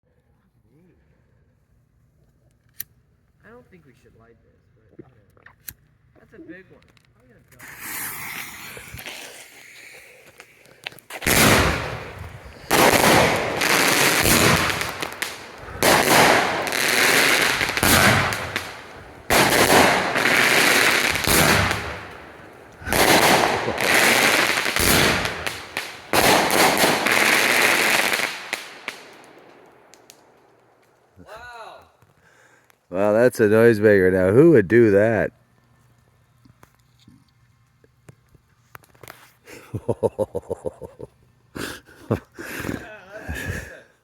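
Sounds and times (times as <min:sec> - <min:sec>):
firework hissing crackling bursts: 0:07.5 - 0:30.9.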